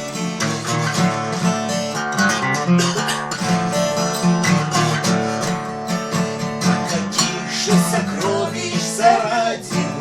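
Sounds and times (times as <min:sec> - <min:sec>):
acoustic guitar strumming: 0:00.0 - 0:10.0.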